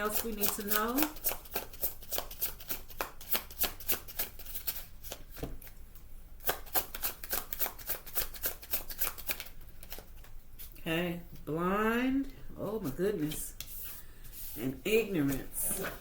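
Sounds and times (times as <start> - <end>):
cards being shuffled: 0.1 - 5.8, 6.4 - 10.8.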